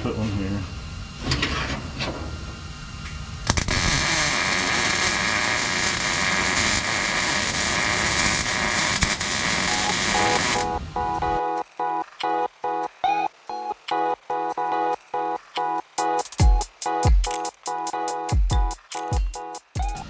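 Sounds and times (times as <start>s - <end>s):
welding arc crackling: 3.4s - 11.0s.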